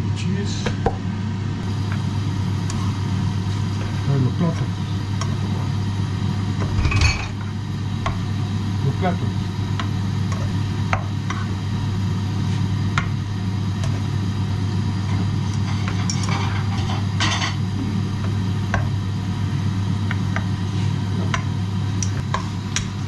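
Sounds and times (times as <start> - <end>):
low mechanical hum: 0.0 - 23.0
utensils scraping dishes: 15.5 - 17.6.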